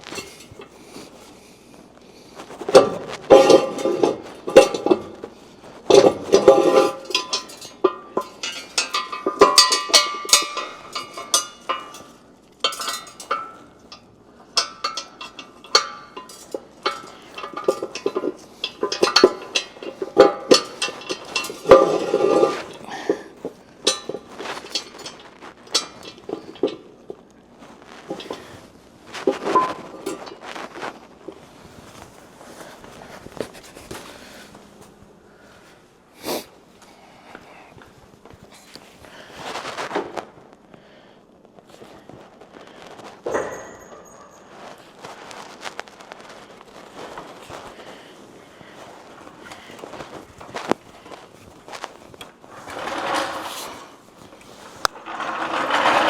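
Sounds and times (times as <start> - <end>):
metal tools clinking and clanking: 0.0 - 1.2, 2.5 - 30.9, 43.2 - 45.5, 48.8 - 56.0.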